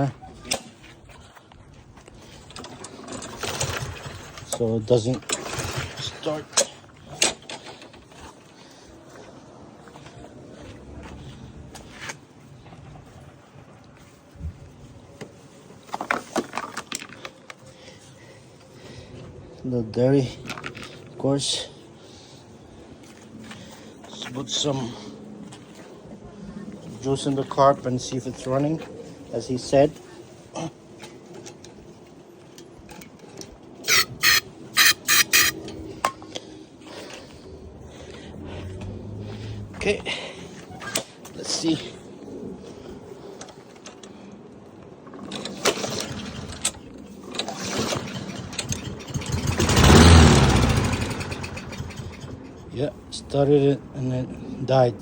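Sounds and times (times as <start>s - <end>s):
mower parts clicking and rattling: 2.2s - 8.4s, 15.8s - 17.6s, 32.5s - 36.4s, 45.1s - 52.7s.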